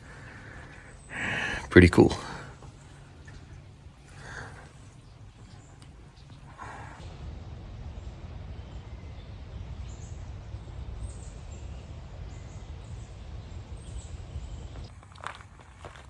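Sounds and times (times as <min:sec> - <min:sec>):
low woodland rumble: 0:00.0 - 0:16.0
footstep crunch: 0:14.4 - 0:16.0.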